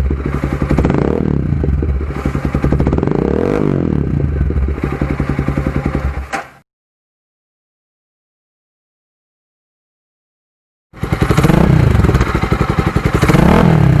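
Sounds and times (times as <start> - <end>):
motorcycle engine idling: 0.0 - 6.3, 11.0 - 14.0.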